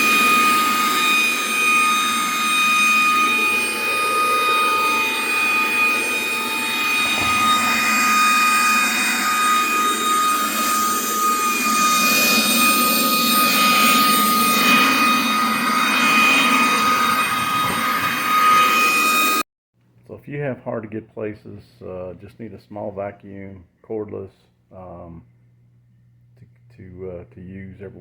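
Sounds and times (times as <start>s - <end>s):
cordless vacuum running: 0.0s - 19.4s.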